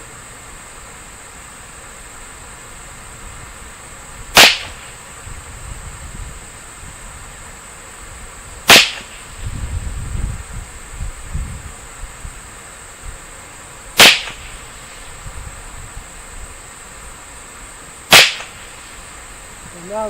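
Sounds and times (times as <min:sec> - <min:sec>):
rifle shots: 0:04.4 - 0:05.0, 0:08.6 - 0:09.4, 0:13.9 - 0:15.2, 0:18.1 - 0:19.2.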